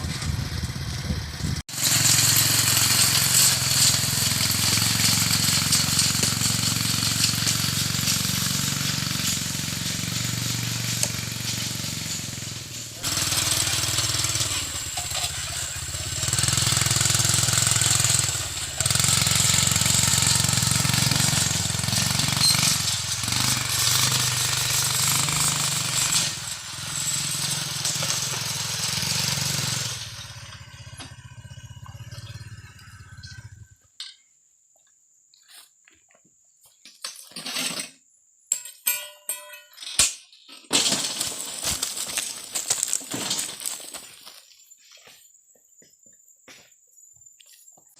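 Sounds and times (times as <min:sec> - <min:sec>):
small engine running with rattle: 0:00.0 - 0:33.8.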